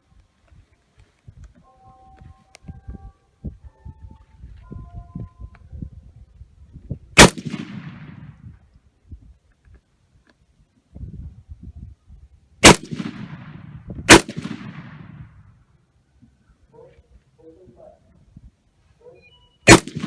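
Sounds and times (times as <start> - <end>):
rifle shots: 7.2 - 8.4, 12.6 - 15.3, 19.7 - 20.0
rolling echo of gunshots: 7.2 - 8.4, 12.6 - 15.4, 19.7 - 20.0.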